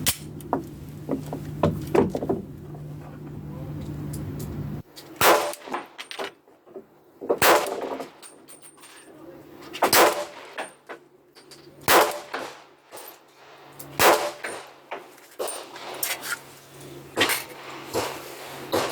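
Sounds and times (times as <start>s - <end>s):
pistol shots with ringing tail: 5.2s - 6.0s, 7.4s - 8.2s, 9.8s - 10.8s, 11.9s - 13.0s, 13.9s - 16.1s.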